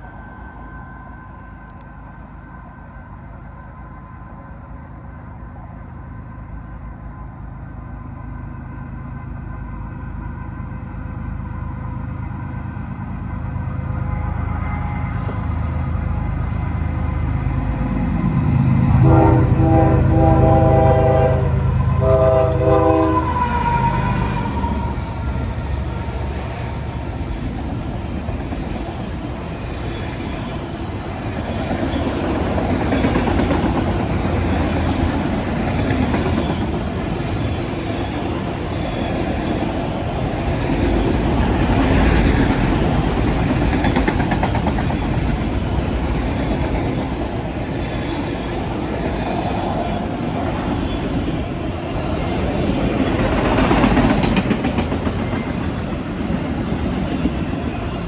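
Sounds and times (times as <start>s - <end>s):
freight train rolling on rails: 0.0s - 58.0s
train horn: 13.8s - 17.4s, 18.4s - 26.9s.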